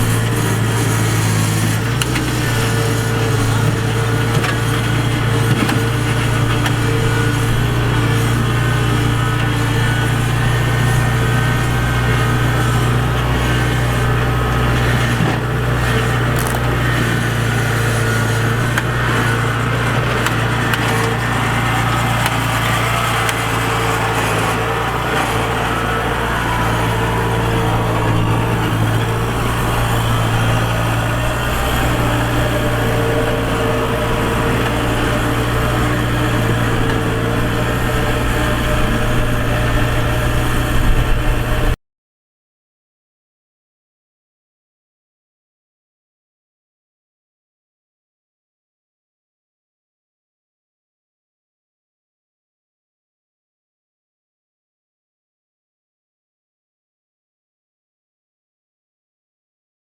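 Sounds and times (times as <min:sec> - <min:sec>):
combine harvester engine humming: 0:00.0 - 0:41.8.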